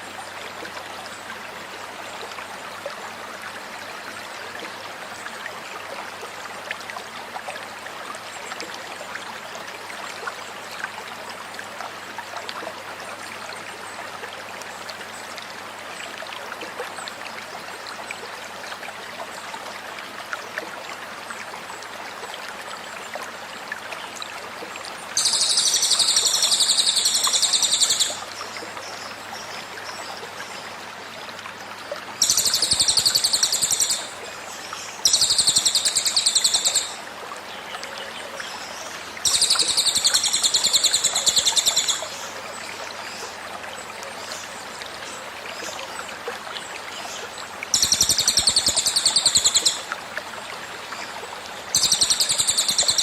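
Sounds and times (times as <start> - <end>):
stream water running: 0.0 - 53.0
bird rapid trilled song: 25.2 - 28.2, 32.2 - 34.1, 35.0 - 37.0, 39.2 - 42.2, 47.7 - 49.8, 51.7 - 53.0.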